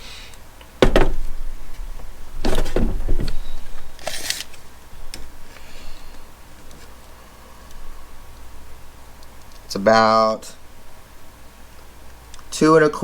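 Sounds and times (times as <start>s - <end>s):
tools knocking and clattering: 0.8s - 1.6s, 2.4s - 3.8s.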